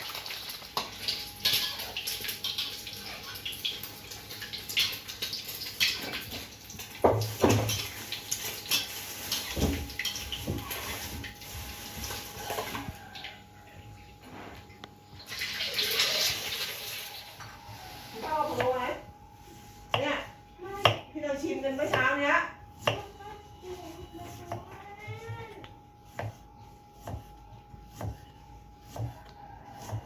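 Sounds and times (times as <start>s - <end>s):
water running from a tap: 0.0s - 12.3s, 15.2s - 17.4s
kitchen utensils clinking: 0.1s - 11.4s.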